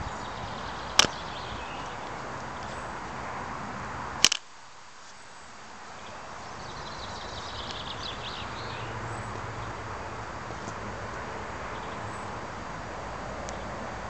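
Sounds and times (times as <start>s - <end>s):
loud sharp click: 1.0s - 1.2s, 4.2s - 4.5s.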